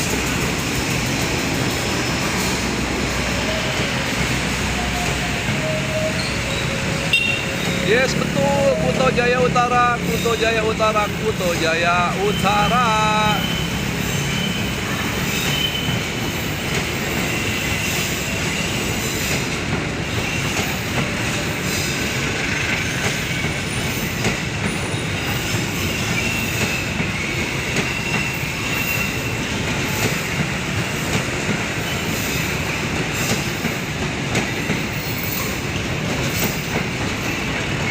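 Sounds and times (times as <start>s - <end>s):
wheels clacking over rail joints: 0.0s - 12.8s, 13.4s - 37.9s
train cars rumbling: 0.0s - 37.9s
faint wheel squeal: 3.2s - 7.9s, 12.1s - 19.4s, 24.7s - 29.5s.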